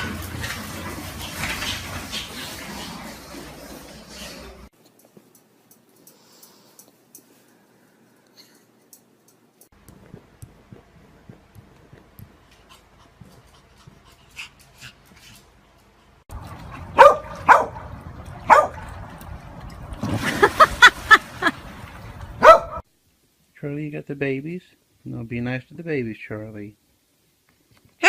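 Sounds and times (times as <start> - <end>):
faint clicking and rustling: 4.8 - 7.6.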